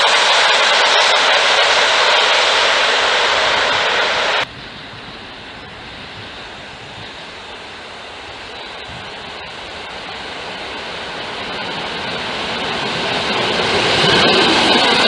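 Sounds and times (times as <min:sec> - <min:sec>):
steady hiss: 0:00.0 - 0:13.0
train rolling past: 0:00.0 - 0:15.0.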